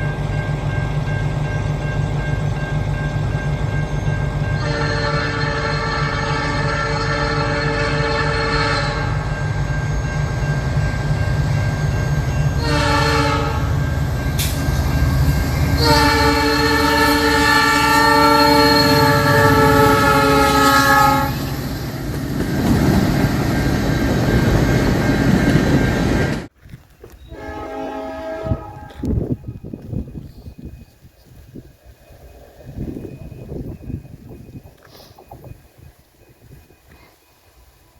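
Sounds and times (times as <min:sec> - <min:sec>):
train rumble and rail noise: 0:00.0 - 0:37.9
faint distant train horn: 0:02.5 - 0:21.8, 0:27.2 - 0:30.8
locomotive horn blasts: 0:04.6 - 0:09.4, 0:12.5 - 0:14.5, 0:15.7 - 0:21.6, 0:27.3 - 0:29.4.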